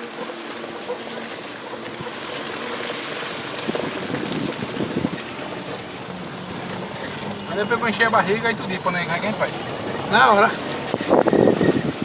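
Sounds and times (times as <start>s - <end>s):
car engine hum: 0.0s - 12.0s
road noise: 0.0s - 12.0s
wind rushing past microphone: 3.6s - 8.1s, 9.6s - 12.0s.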